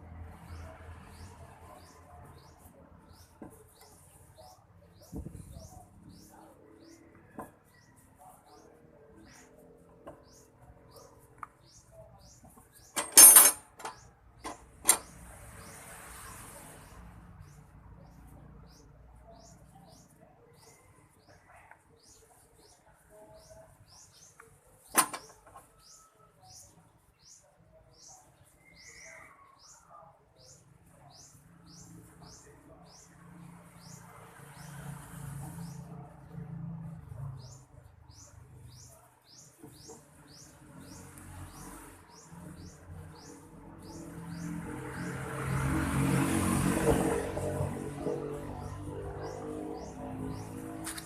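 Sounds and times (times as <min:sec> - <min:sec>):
birds chirping: 0:00.4 - 0:51.0
metal tools clattering: 0:13.0 - 0:15.0.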